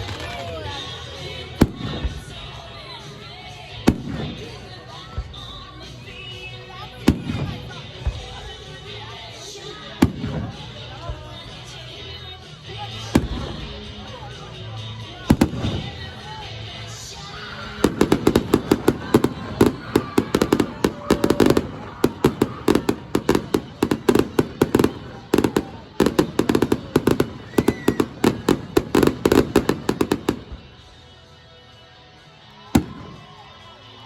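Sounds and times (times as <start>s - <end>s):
fireworks bangs and crackles: 0.0s - 2.6s, 3.8s - 6.0s, 7.0s - 11.4s, 12.7s - 14.4s, 15.2s - 30.9s, 32.8s - 33.5s.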